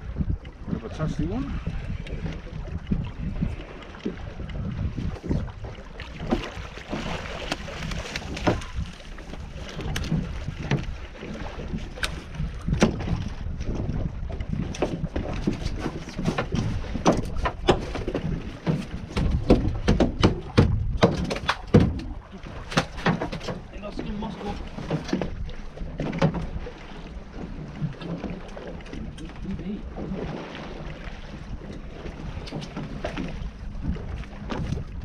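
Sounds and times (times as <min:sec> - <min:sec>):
water against boat hull: 0:00.0 - 0:35.0
wind rumble on microphone: 0:00.0 - 0:35.0
sharp knocks and clicks: 0:14.7 - 0:22.1, 0:22.7 - 0:23.7.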